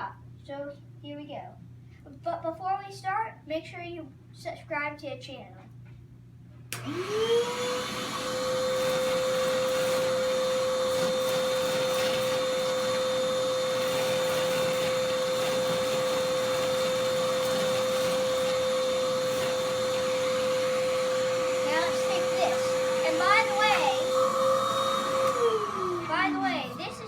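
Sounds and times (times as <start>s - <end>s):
handheld vacuum cleaner running: 6.8s - 27.0s.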